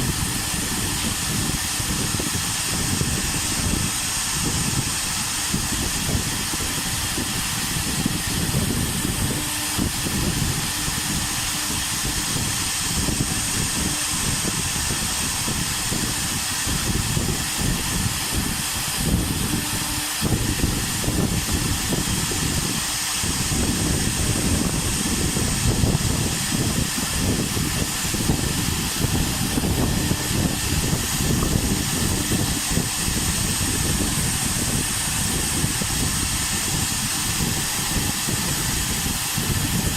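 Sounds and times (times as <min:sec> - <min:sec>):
cnc router spindle whine: 0:00.0 - 0:39.9
router cutting wood: 0:00.0 - 0:39.9.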